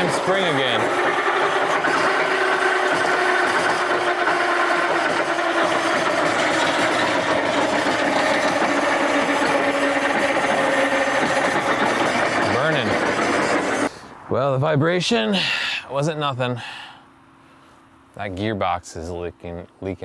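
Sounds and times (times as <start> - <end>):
sawmill mechanical whine: 0.0 - 14.1.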